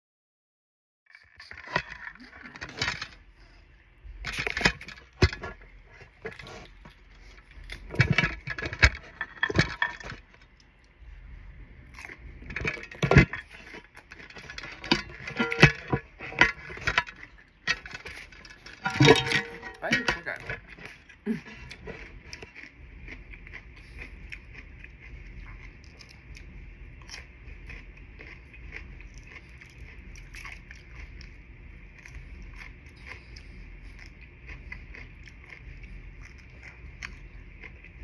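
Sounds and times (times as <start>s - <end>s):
wet biting and chewing: 11.8s - 38.0s.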